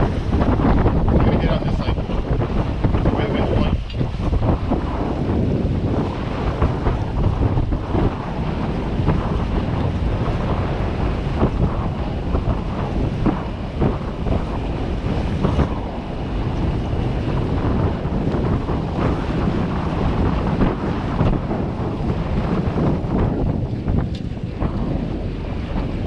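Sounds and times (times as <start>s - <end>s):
water washing: 0.0s - 26.0s
wind buffeting microphone: 0.0s - 26.0s.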